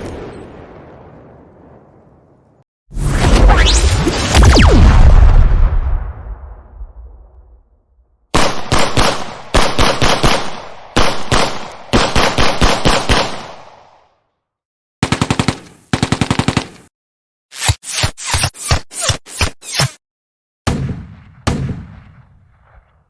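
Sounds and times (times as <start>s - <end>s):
machine-gun fire bursts: 8.3s - 13.6s, 15.0s - 16.9s.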